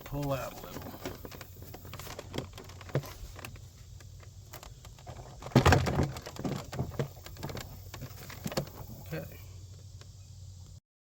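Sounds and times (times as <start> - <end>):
loud clatter of knocks: 4.6 - 8.8.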